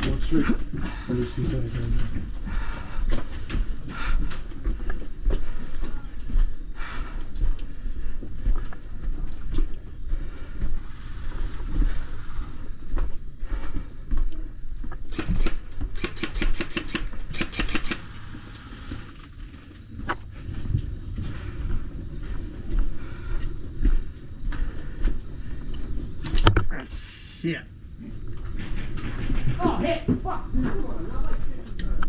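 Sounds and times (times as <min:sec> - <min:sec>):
airsoft gun firing: 0:15.1 - 0:18.1
low rumble: 0:17.6 - 0:29.6.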